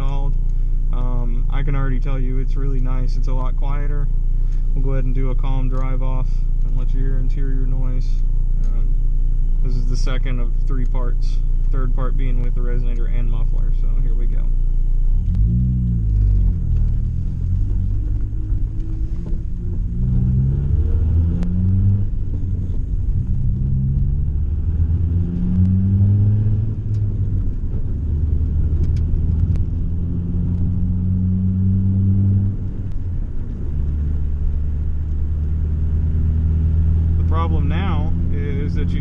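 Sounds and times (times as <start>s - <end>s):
car engine accelerating through gears: 15.0s - 39.0s
rattles and squeaks in car: 15.2s - 20.3s.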